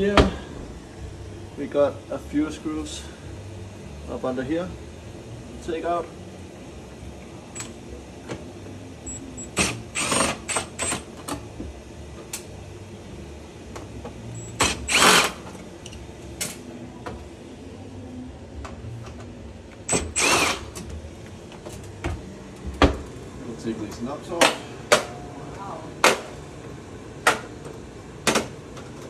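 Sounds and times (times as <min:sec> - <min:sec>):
cordless drill whining in bursts: 0:09.1 - 0:11.1, 0:14.4 - 0:15.5, 0:19.9 - 0:20.8.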